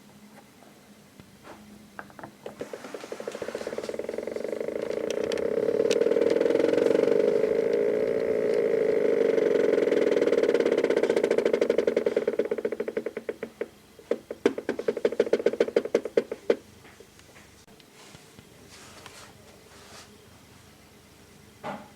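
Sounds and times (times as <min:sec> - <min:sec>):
stepper motor buzzing whine: 0:02.6 - 0:16.6.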